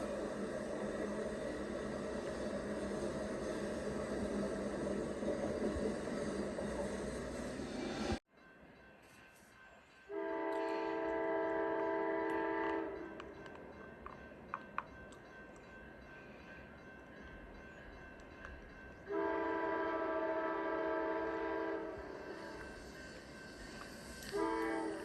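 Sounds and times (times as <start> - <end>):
moving train noise: 0.0 - 25.0
locomotive chord horn blasts: 10.1 - 13.1, 19.1 - 22.1, 24.2 - 25.0.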